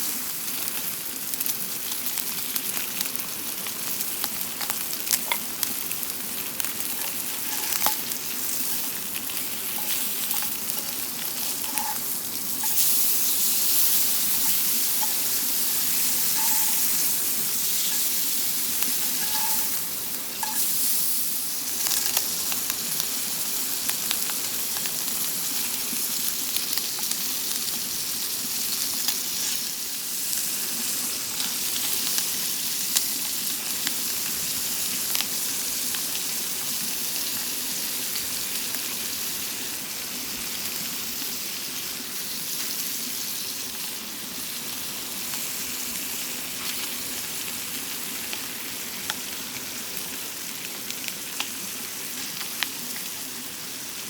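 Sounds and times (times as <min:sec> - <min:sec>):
food sizzling in a pan: 0:00.0 - 0:54.0
sharp frying pops: 0:01.3 - 0:27.8.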